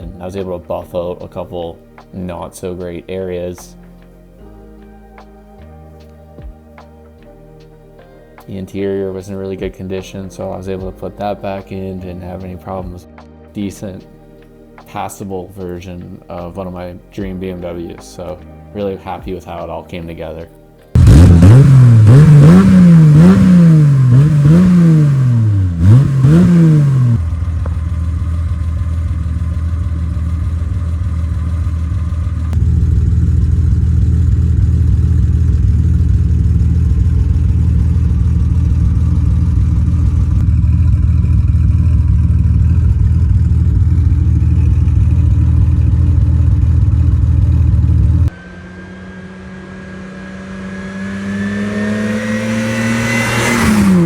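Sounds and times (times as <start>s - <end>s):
car engine revving and idling: 20.9s - 54.0s.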